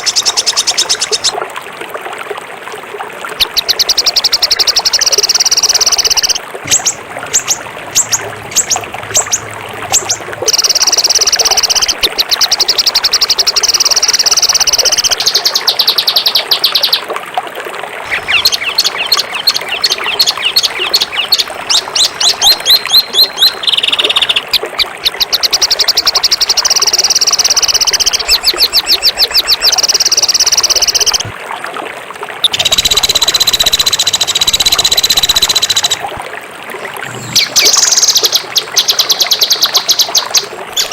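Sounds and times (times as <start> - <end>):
songbird fast harsh trills: 3.7 - 15.0, 18.1 - 24.5, 32.5 - 36.1, 37.1 - 40.9.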